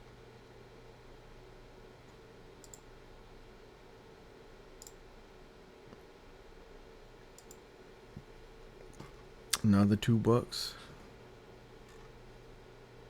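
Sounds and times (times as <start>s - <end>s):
low steady hum: 0.0s - 13.0s
computer mouse clicks: 2.6s - 2.9s, 4.8s - 5.0s, 7.4s - 7.6s.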